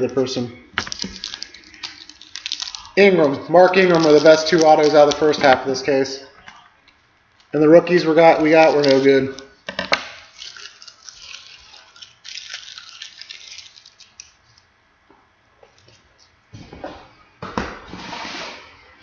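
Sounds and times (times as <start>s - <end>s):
packaging crinkling and rustling: 0.8s - 14.7s.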